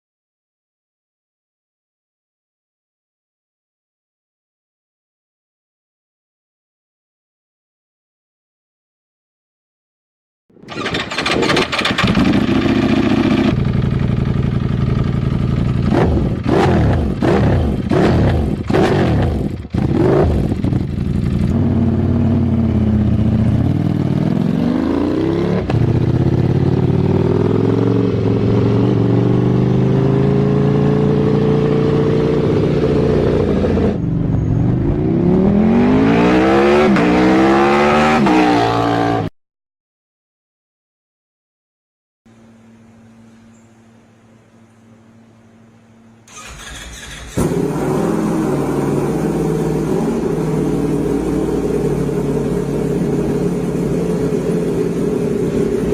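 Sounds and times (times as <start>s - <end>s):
motorcycle engine revving: 10.6s - 39.3s, 46.3s - 55.9s.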